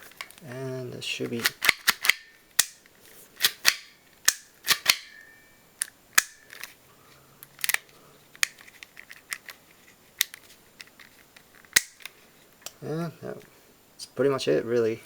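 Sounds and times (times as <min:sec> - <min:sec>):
paper model parts clicking: 0:01.2 - 0:02.8.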